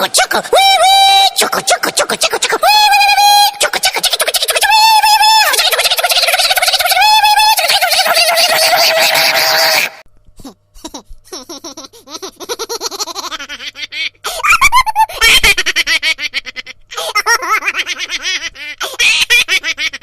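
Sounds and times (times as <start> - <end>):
high-pitched laughter ringtone: 3.7 - 10.0.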